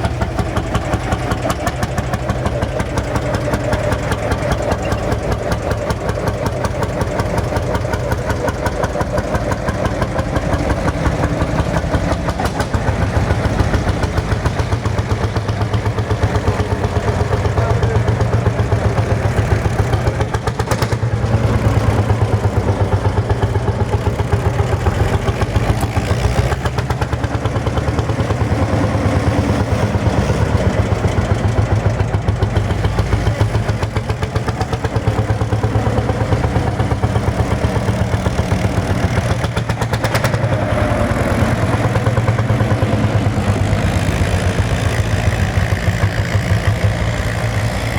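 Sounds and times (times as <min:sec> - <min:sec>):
two-stroke tractor engine running: 0:00.0 - 0:47.9.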